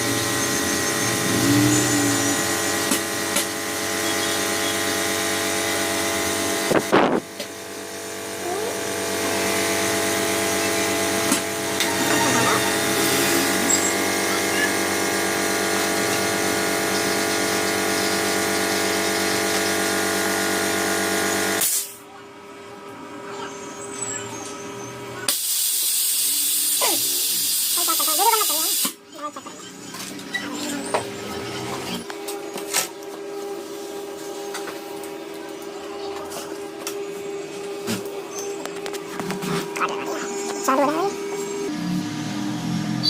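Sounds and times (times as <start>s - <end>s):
small electric motor whining: 0.0s - 7.2s.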